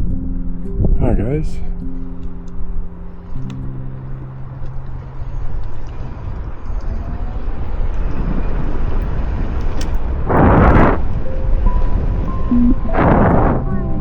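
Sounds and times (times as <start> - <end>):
road rumble: 0.0 - 14.0
wind noise on microphone: 0.0 - 14.0.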